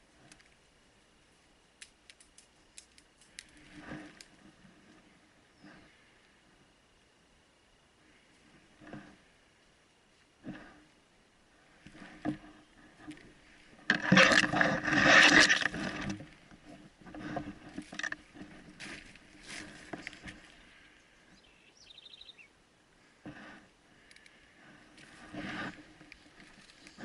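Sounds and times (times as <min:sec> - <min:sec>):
rustling and crunching: 0:00.0 - 0:06.0, 0:11.7 - 0:20.8, 0:23.3 - 0:27.0.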